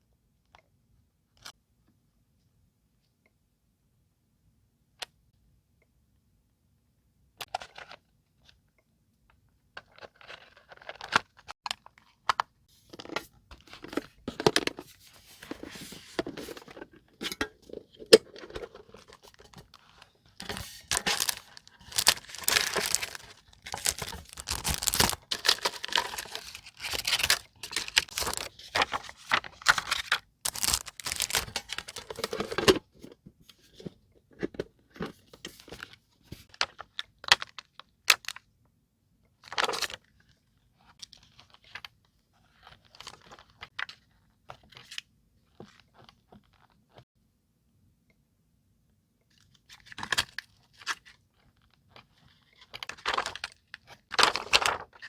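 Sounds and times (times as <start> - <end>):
paper rustling: 12.8 - 32.8, 52.3 - 55.0
paper tearing and crinkling: 20.5 - 32.6.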